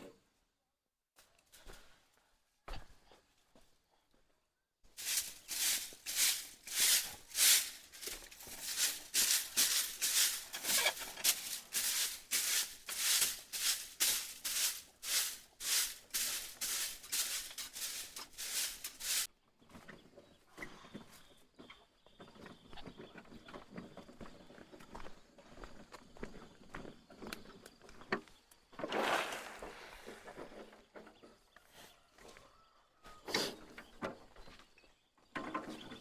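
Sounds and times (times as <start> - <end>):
rhythmic scraping strokes: 5.0 - 19.3.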